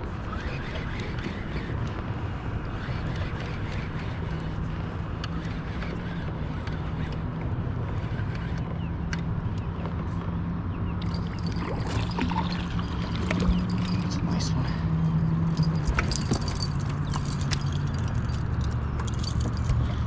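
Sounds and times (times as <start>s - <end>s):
constant low hum: 0.0s - 20.0s
kayak rushing through water: 11.1s - 14.0s.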